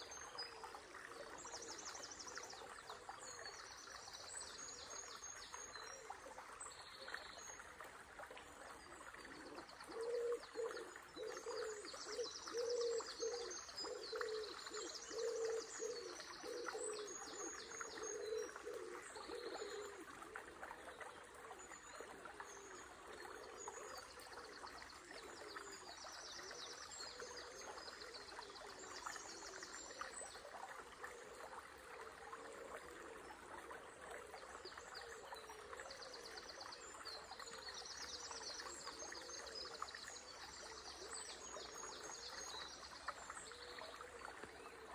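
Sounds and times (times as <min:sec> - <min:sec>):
songbirds singing: 0:09.1 - 0:20.1.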